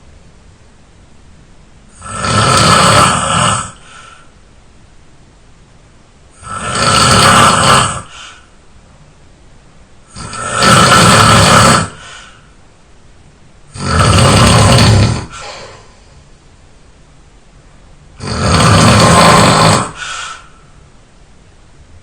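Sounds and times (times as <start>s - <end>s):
person snoring: 1.9s - 4.3s, 6.4s - 8.5s, 10.1s - 12.5s, 13.7s - 16.2s, 18.2s - 20.7s
soft breath: 3.8s - 4.4s, 8.0s - 8.6s, 11.9s - 12.6s, 15.2s - 16.4s, 19.9s - 20.9s.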